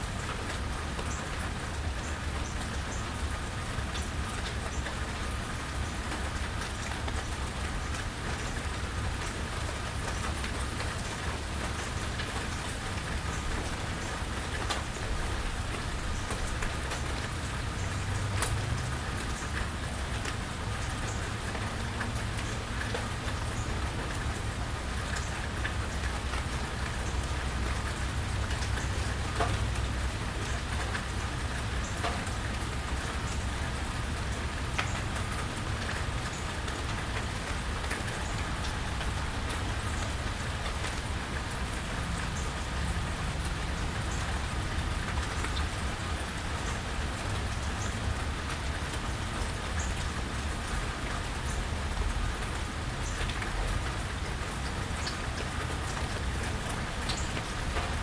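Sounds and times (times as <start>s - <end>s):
rain pattering: 0.0s - 58.0s
sharp drip ticks: 15.7s - 41.0s.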